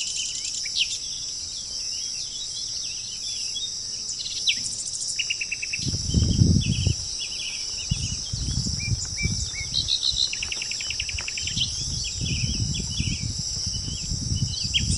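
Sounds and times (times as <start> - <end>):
birds chirping and trilling: 0.0 - 14.9
high insect drone: 0.0 - 14.9.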